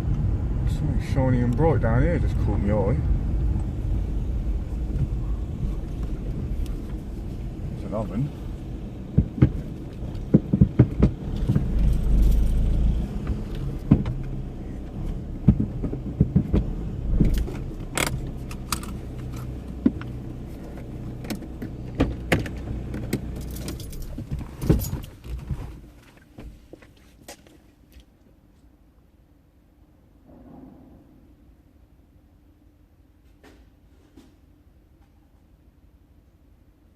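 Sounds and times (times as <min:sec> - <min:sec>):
vehicle engine running: 0:00.0 - 0:25.8.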